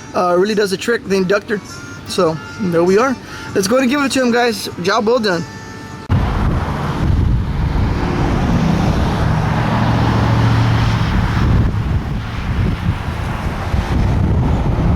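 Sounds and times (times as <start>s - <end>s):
vehicle running: 0.0s - 14.9s
wind rumbling on microphone: 6.1s - 14.9s.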